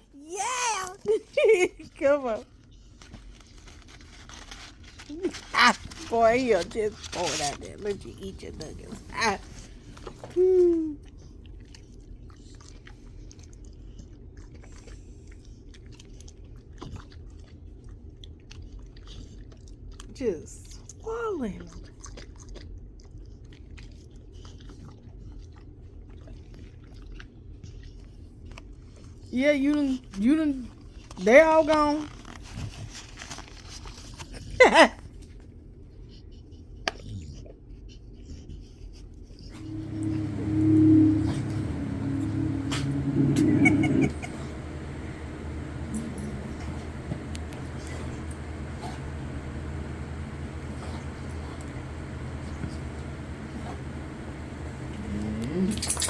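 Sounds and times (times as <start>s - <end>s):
dog chewing and crunching food: 2.2s - 10.4s, 11.0s - 40.5s, 41.2s - 56.0s
dog whining: 39.5s - 56.0s.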